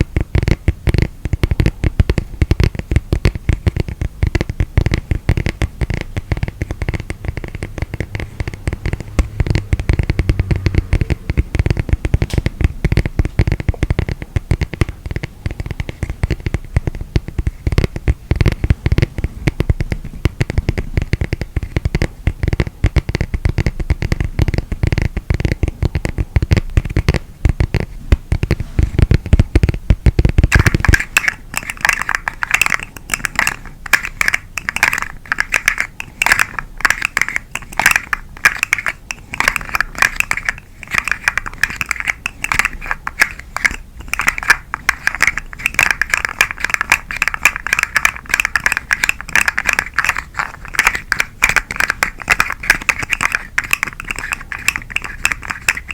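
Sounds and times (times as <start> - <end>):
scratching and clicking on woven mat: 0.0 - 55.9.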